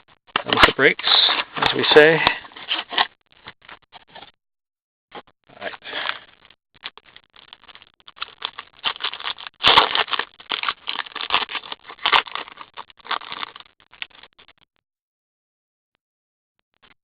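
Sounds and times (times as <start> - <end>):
packaging being torn open: 6.9 - 14.3.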